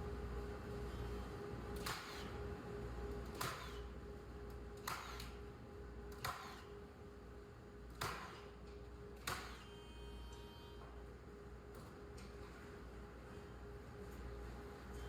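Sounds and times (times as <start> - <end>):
hammer striking nails into wood: 8.0 - 8.4.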